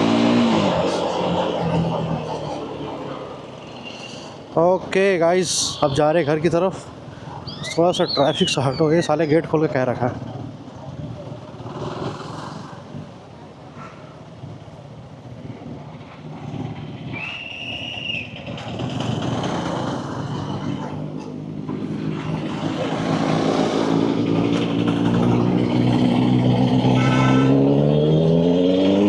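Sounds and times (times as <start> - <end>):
motorcycle engine accelerating: 0.0 - 4.1, 15.2 - 17.2, 18.3 - 29.0
traffic: 0.0 - 29.0
vehicle horn honking: 26.8 - 27.9.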